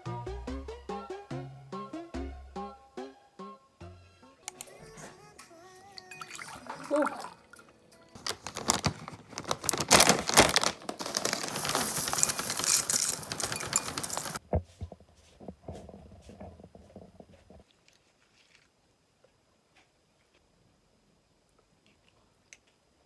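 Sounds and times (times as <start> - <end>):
crinkling and rustling: 8.2 - 18.8.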